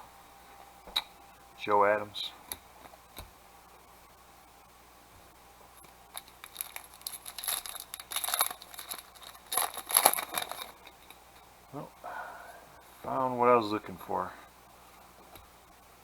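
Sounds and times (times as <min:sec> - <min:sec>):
foil wrapper crinkling and tearing: 0:06.1 - 0:11.2.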